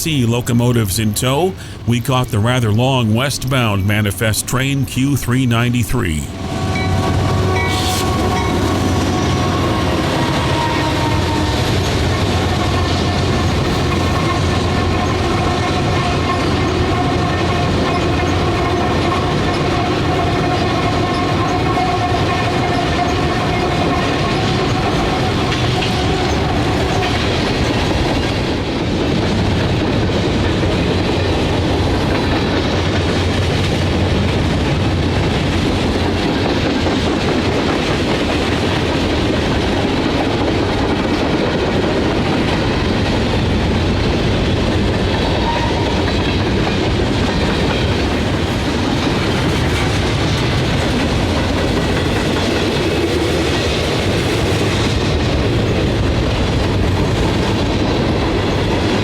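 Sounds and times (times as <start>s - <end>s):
train wheels clattering on rails: 6.5s - 59.0s.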